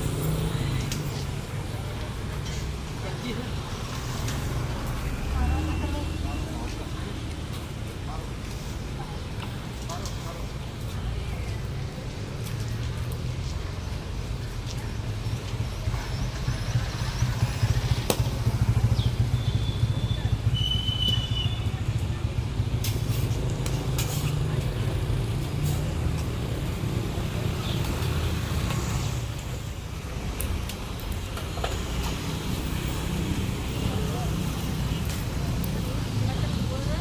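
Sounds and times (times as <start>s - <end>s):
road traffic rumble: 0.0s - 37.0s.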